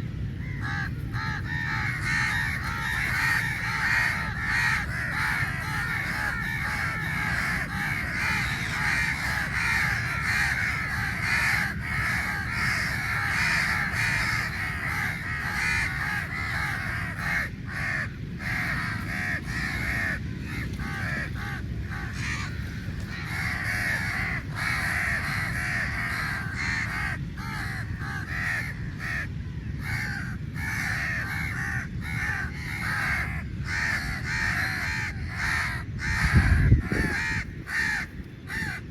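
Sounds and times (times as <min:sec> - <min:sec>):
crows cawing: 0:00.0 - 0:38.9.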